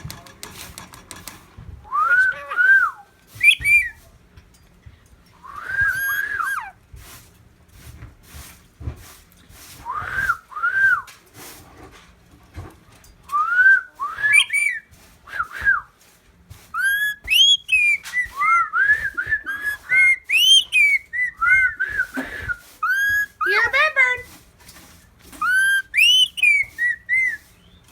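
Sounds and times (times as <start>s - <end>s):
bird whistling: 1.9s - 4.0s, 5.4s - 6.8s, 13.3s - 15.8s, 16.7s - 23.7s, 25.4s - 27.9s.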